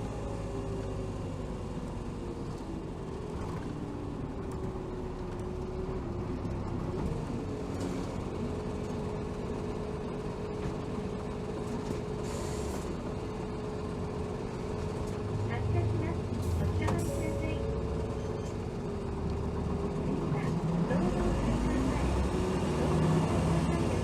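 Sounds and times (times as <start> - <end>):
bus running from inside: 0.0 - 24.0.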